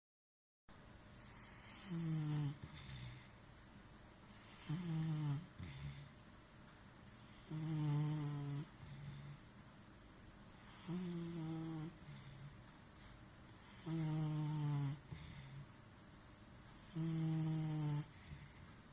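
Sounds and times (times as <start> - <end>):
person snoring: 1.2 - 3.3, 4.4 - 6.1, 7.3 - 9.4, 10.6 - 12.5, 13.6 - 15.6, 16.8 - 18.6.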